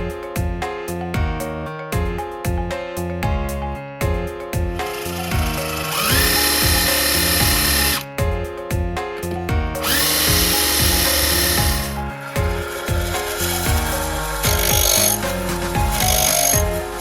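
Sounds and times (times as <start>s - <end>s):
background music: 0.0s - 17.0s
power tool motor whining: 4.9s - 8.0s, 9.8s - 17.0s.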